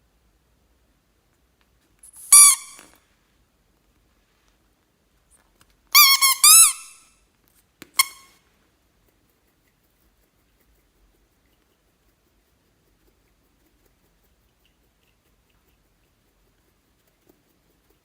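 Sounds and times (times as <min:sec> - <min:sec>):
high-pitched squeaks: 0:02.1 - 0:03.0, 0:06.0 - 0:07.0, 0:08.0 - 0:08.3.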